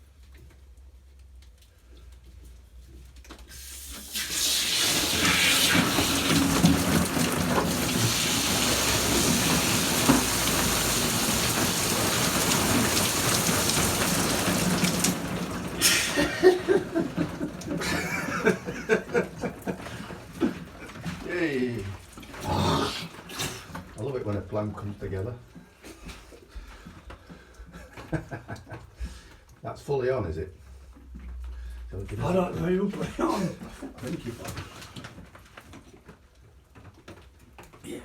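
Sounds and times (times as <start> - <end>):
water spraying from pipe: 3.5 - 24.1.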